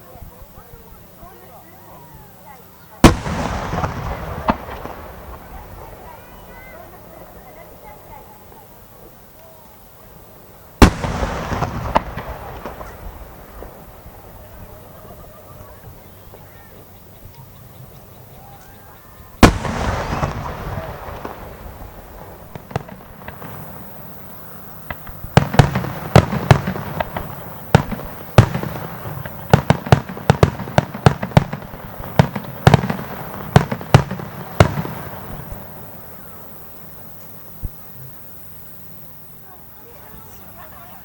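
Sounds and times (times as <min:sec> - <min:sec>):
aerial firework shell bursting: 0:03.0 - 0:08.2, 0:10.8 - 0:15.1, 0:19.4 - 0:38.7
echoing rumble: 0:03.0 - 0:08.4, 0:10.2 - 0:16.8, 0:19.0 - 0:38.9
barrage of sharp firework bangs: 0:03.0 - 0:09.2, 0:10.2 - 0:16.6, 0:19.3 - 0:40.4.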